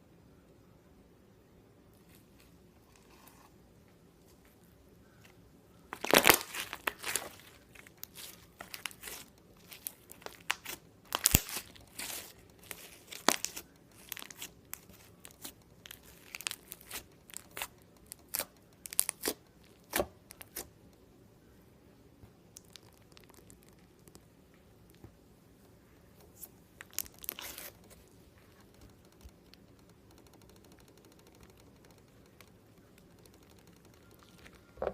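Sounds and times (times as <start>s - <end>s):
slime crackling and popping: 5.9s - 20.7s, 22.5s - 24.3s, 26.8s - 27.9s.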